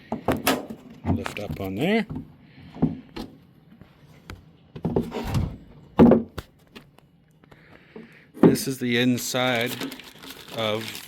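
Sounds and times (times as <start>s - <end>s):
hollow knocks and thunks: 4.8s - 6.4s.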